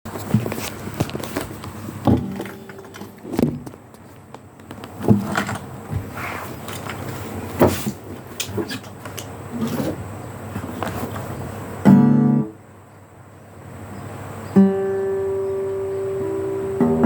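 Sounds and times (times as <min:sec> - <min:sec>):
irregular knocks and bumps: 0:00.2 - 0:03.8.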